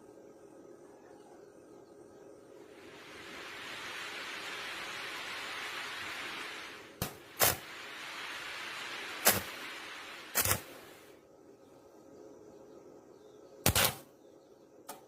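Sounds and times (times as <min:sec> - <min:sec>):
welding arc hissing: 0:02.7 - 0:11.2, 0:13.6 - 0:14.1
loud sharp cracks: 0:09.2 - 0:09.6, 0:13.6 - 0:14.1.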